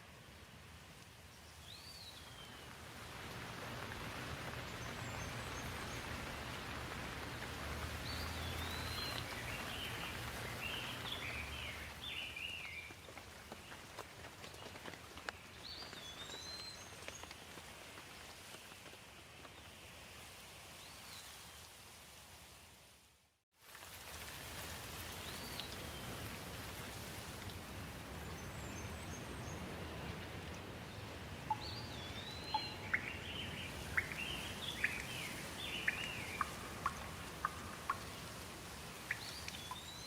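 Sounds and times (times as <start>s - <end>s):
steady rain: 0.0s - 40.0s
small birds chirping: 4.6s - 13.8s, 31.5s - 38.4s, 39.0s - 40.0s.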